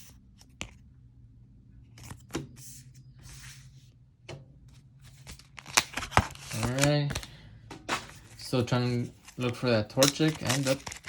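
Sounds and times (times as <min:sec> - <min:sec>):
cards sliding together: 0:05.1 - 0:07.3.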